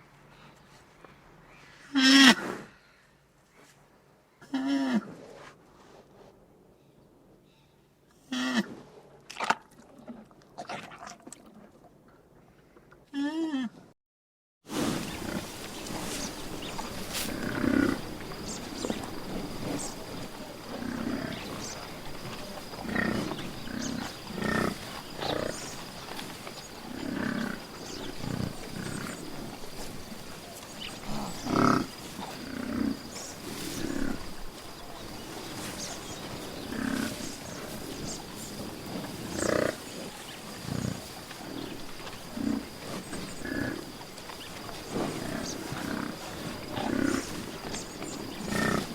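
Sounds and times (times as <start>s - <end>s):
large animal growling: 15.0s - 25.9s, 44.8s - 48.9s.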